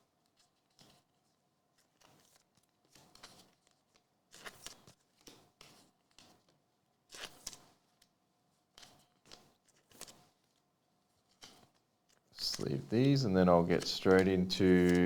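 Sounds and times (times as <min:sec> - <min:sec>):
trading cards rustling and scraping: 0:08.8 - 0:10.2, 0:12.4 - 0:15.0.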